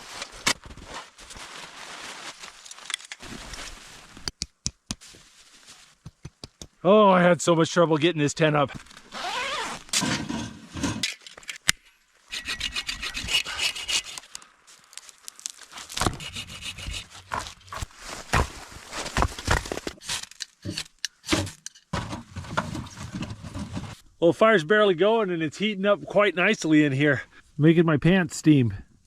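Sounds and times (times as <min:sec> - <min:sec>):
hand saw cutting wood: 0:12.3 - 0:14.3, 0:16.0 - 0:17.8.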